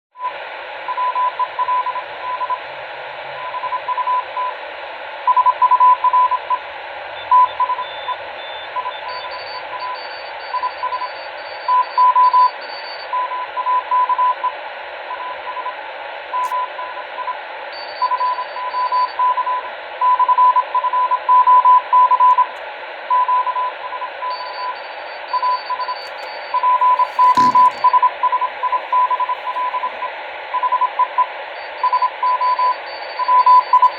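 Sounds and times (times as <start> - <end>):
morse code tone: 26.0 - 27.9
radio receiver hiss: 26.0 - 27.9.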